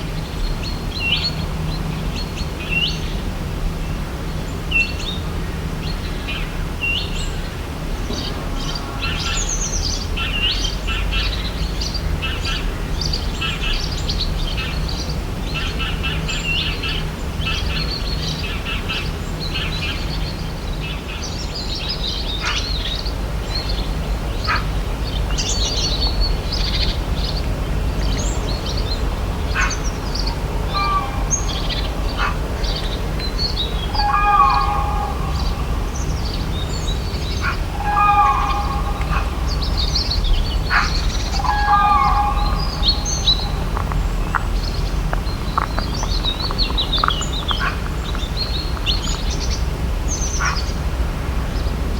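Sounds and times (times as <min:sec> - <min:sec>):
birds calling and chirping: 0:08.0 - 0:51.9
low rumble: 0:26.2 - 0:50.0
low hooked bird call: 0:29.4 - 0:44.4.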